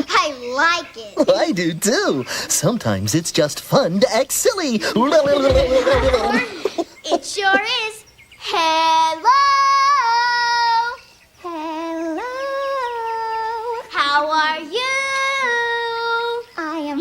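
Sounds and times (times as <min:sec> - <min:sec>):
person singing wordlessly: 0:11.5 - 0:17.0.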